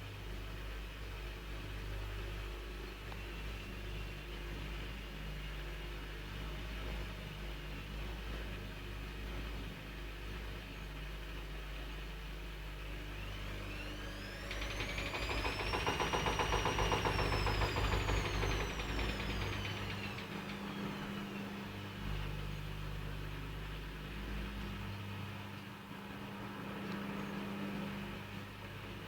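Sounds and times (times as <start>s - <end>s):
washing machine motor whine: 12.6s - 23.4s
rapid knocking inside machine: 13.7s - 21.2s.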